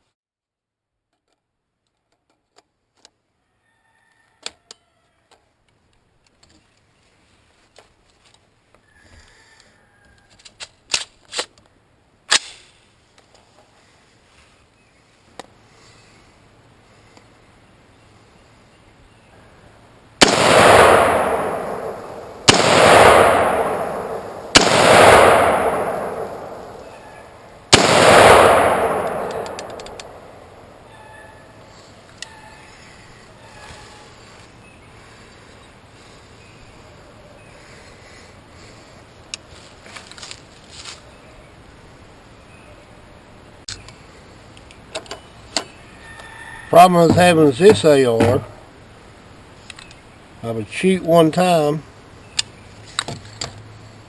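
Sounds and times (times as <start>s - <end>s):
rifle shots with echo: 20.2s - 31.0s
faint scattered clicks: 28.9s - 30.3s, 43.7s - 45.7s, 49.6s - 50.1s.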